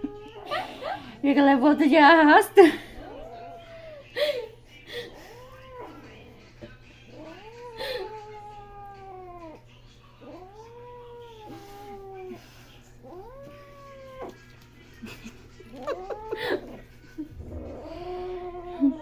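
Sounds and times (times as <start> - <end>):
cats yowling in a fight: 0.0 - 1.0, 2.9 - 4.2, 5.1 - 6.4, 7.0 - 14.7, 15.7 - 19.0.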